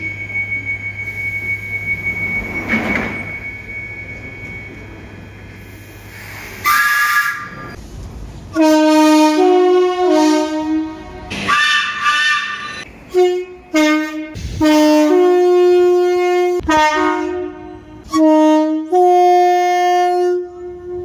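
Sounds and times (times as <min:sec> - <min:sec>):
train noise with whine: 0:00.0 - 0:21.0
multi-note train horn: 0:06.6 - 0:07.6, 0:08.5 - 0:21.0
short high train horn: 0:08.6 - 0:21.0.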